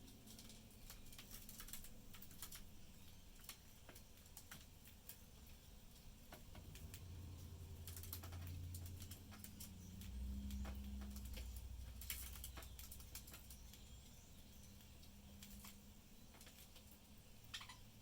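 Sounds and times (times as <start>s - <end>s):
low steady rumble: 6.5s - 16.2s
birds cracking seed: 7.8s - 17.8s.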